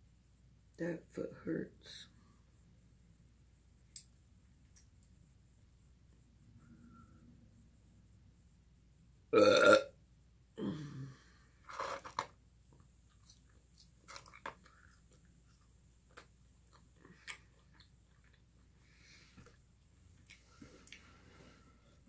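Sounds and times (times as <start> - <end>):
loud short burp: 9.4 - 9.9.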